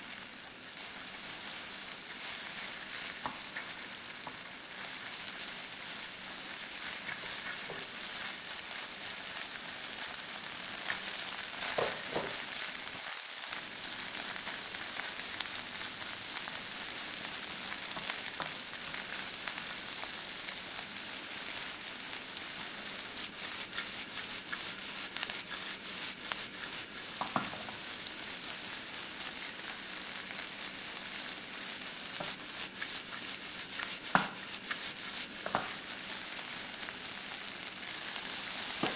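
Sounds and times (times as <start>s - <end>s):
food sizzling in a pan: 0.0s - 38.9s
spatula knocking pan: 27.2s - 27.7s, 34.1s - 34.4s, 35.4s - 35.8s.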